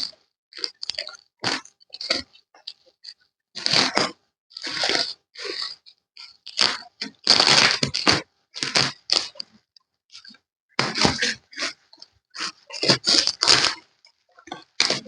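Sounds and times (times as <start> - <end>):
packaging crinkling and scraping: 6.4 - 9.5, 12.4 - 13.9, 14.5 - 15.0.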